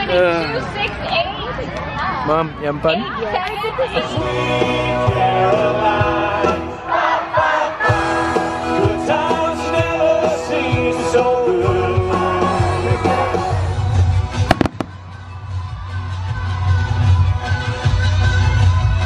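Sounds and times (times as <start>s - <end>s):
pop song with singing: 3.8s - 14.2s
firework bangs: 14.5s - 15.2s.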